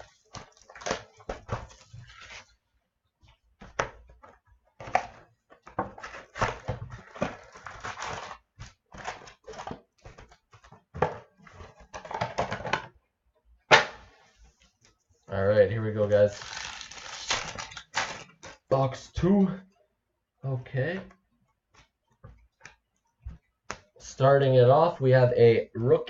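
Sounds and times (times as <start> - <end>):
cardboard and wrappers crinkling: 0.0 - 2.6, 4.9 - 10.8, 16.2 - 18.6.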